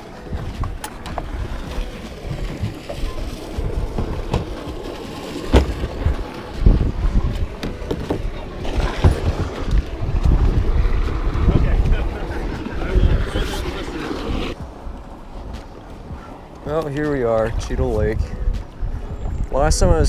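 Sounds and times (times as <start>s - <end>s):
wind buffeting microphone: 0.0s - 20.0s
sharp knocks and thumps: 5.5s - 6.8s, 7.6s - 10.4s.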